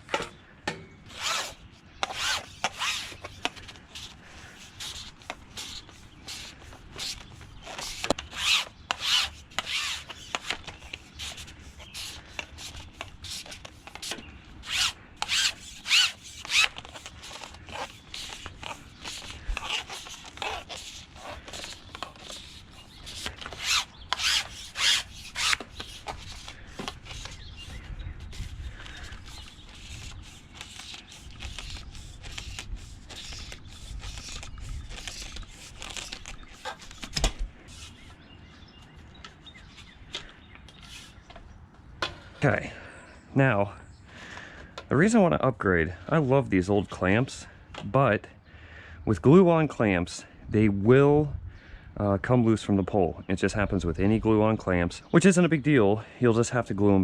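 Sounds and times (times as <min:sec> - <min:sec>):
pole sections scraping: 0:01.0 - 0:38.2, 0:39.6 - 0:41.4.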